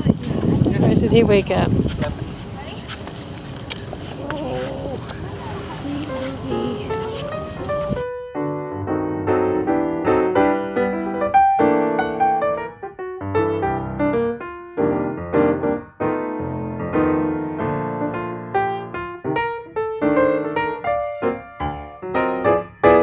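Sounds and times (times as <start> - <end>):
gentle piano music: 5.2 - 23.0.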